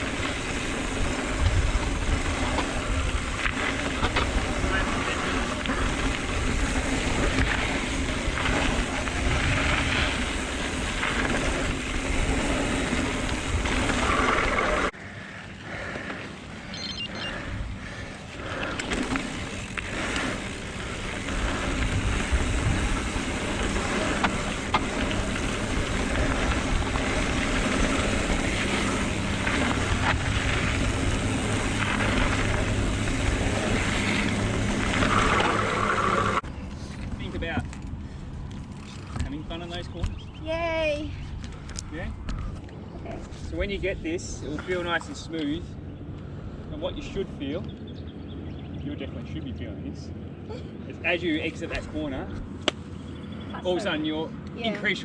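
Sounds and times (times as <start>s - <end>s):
wind buffeting microphone: 0.0s - 15.0s, 17.3s - 44.6s
bike tyre noise on dirt: 0.0s - 49.3s.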